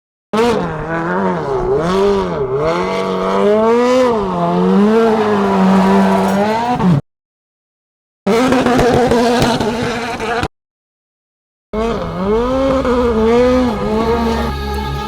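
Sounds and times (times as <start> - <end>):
car engine revving: 0.4 - 7.0, 8.3 - 10.5, 11.8 - 15.0.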